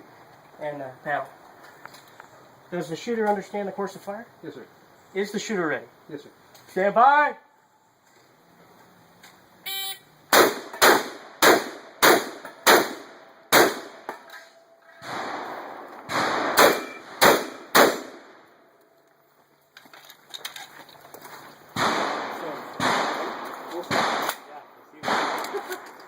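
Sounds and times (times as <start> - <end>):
shotgun shots: 10.3 - 14.2, 15.0 - 18.4, 21.8 - 25.8.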